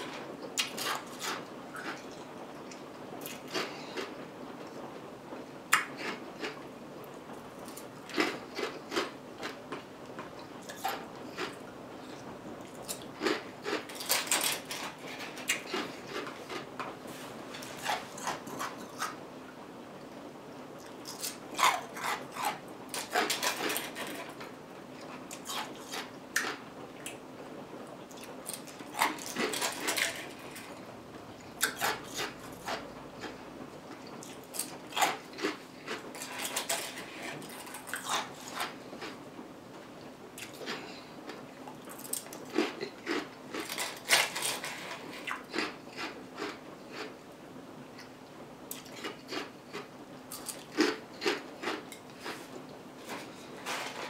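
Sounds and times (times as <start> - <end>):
ice crunching and chewing: 0.0 - 4.1, 7.6 - 16.7, 20.8 - 24.4, 28.1 - 30.8, 31.6 - 33.4, 34.1 - 39.2, 40.4 - 41.1, 41.8 - 47.1, 48.7 - 54.0
faint steady hum: 0.0 - 54.0.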